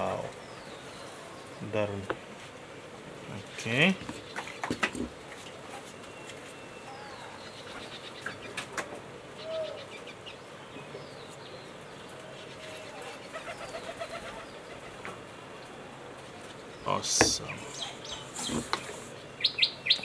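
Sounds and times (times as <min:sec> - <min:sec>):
birds chirping and cooing: 0:00.0 - 0:20.0.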